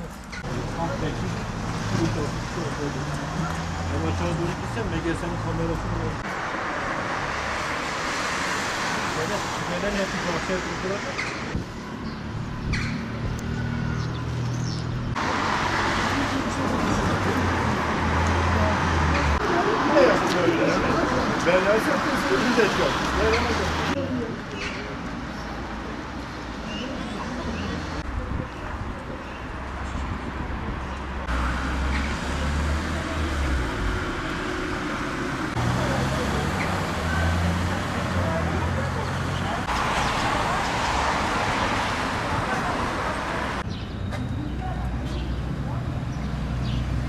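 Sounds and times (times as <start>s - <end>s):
road noise: 0.0s - 47.0s
vehicle engine humming: 30.5s - 43.6s.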